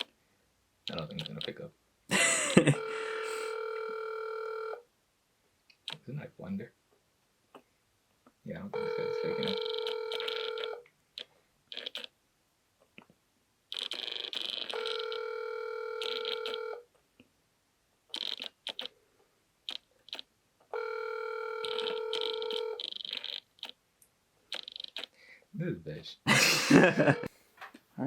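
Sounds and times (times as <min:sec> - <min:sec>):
phone ringing on speaker: 0:02.1 - 0:04.8, 0:08.7 - 0:10.8, 0:14.1 - 0:16.8, 0:20.8 - 0:22.9, 0:26.7 - 0:27.3.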